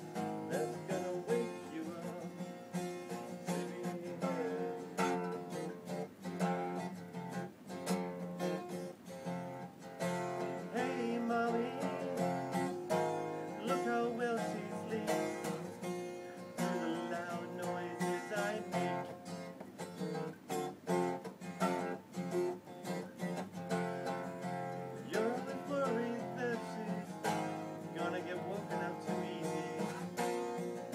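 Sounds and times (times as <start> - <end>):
acoustic guitar strummed and picked: 0.0 - 30.9
person singing: 0.2 - 5.8, 10.5 - 19.2, 25.0 - 30.2.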